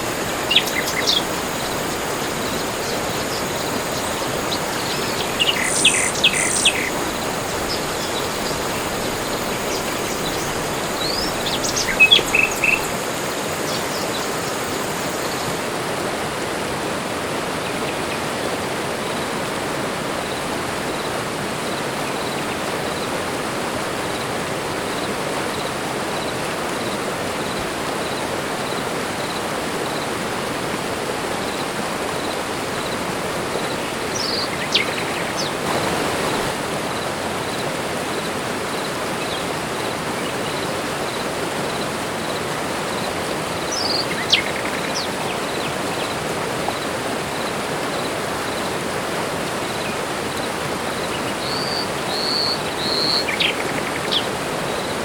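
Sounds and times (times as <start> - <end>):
birds chirping: 0.0 - 15.4, 33.7 - 36.6, 43.7 - 46.2, 51.1 - 54.9.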